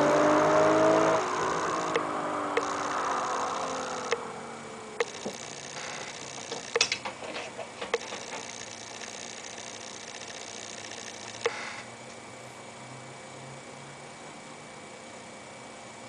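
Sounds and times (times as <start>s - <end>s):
car engine exhaust note: 0.0s - 5.0s
sharp ticks and clicks: 1.0s - 4.2s, 5.0s - 7.2s, 7.8s - 11.8s.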